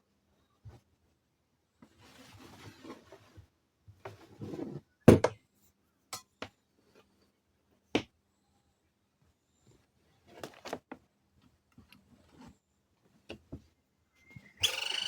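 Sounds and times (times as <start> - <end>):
soft rustle: 1.8 - 4.6.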